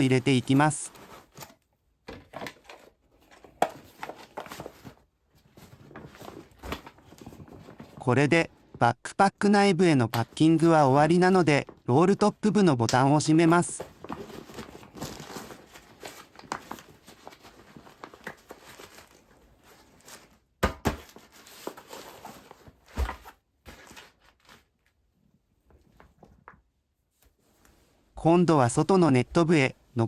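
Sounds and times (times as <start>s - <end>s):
nylon fabric rustling and crinkling: 13.4s - 20.3s.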